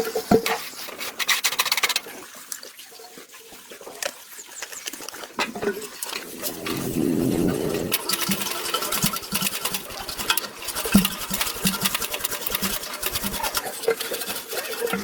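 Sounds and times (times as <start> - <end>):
rapid irregular clicking: 4.7 - 15.0.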